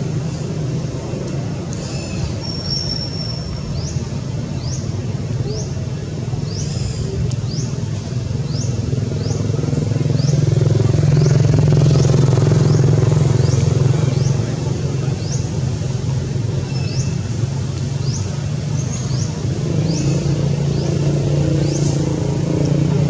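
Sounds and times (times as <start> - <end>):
motor engine running: 8.3 - 16.6.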